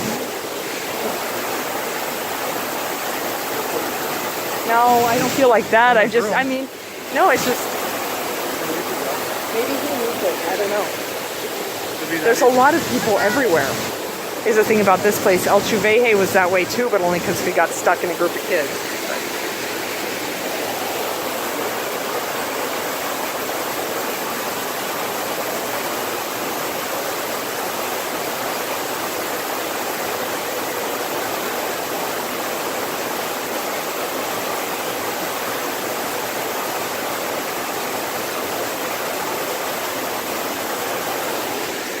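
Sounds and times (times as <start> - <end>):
waterfall rushing: 0.0 - 42.0.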